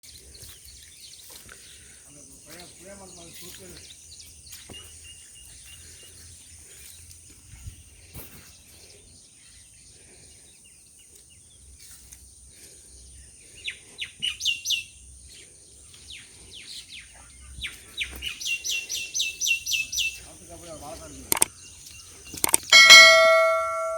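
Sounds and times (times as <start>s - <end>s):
birds chirping: 0.1s - 11.8s, 12.4s - 23.9s.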